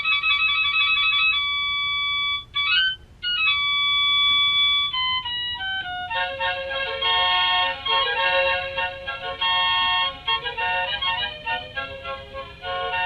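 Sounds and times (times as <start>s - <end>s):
electronic lullaby tune: 0.0s - 13.0s.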